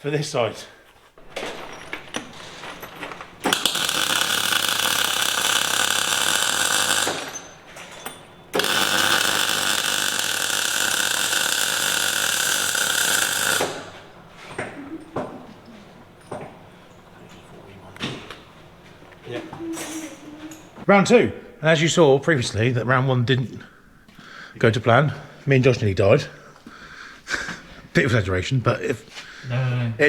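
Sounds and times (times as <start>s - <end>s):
power tool running: 1.2s - 19.2s.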